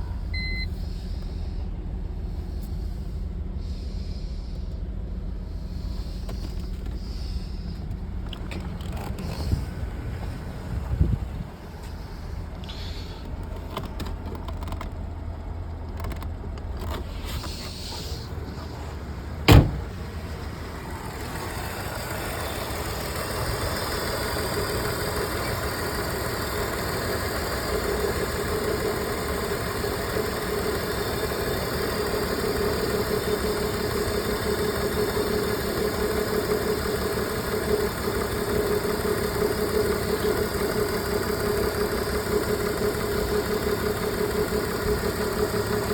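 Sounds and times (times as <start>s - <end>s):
car engine idling with misfire: 0.0s - 45.9s
sharp thump: 19.5s - 20.0s.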